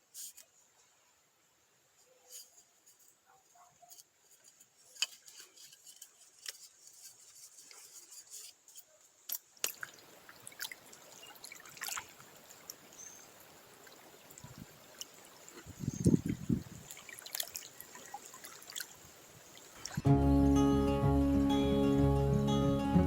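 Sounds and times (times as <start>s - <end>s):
faint clicks and handling knocks: 3.8s - 9.5s
liquid trickling: 9.5s - 20.1s.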